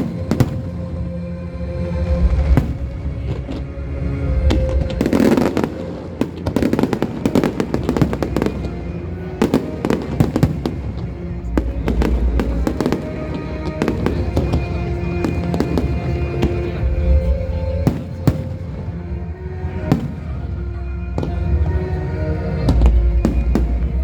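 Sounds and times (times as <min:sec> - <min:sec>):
fireworks bangs and crackling: 0:00.0 - 0:00.9, 0:02.2 - 0:03.6, 0:04.4 - 0:18.9, 0:19.9 - 0:20.4, 0:22.6 - 0:24.0
low rumble: 0:00.0 - 0:09.8
music playing: 0:00.0 - 0:24.0.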